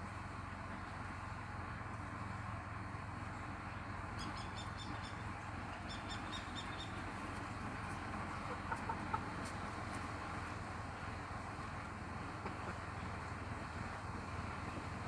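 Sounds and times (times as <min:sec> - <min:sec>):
chickens chirping: 0:04.2 - 0:10.4
chickens clucking: 0:04.2 - 0:10.6, 0:12.2 - 0:13.3.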